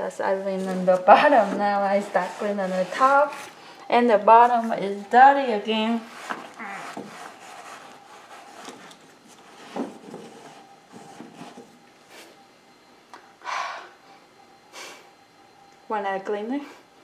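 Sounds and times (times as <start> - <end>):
faint steady hum: 0.0 - 17.0
hand rubbing and scraping: 0.2 - 12.4.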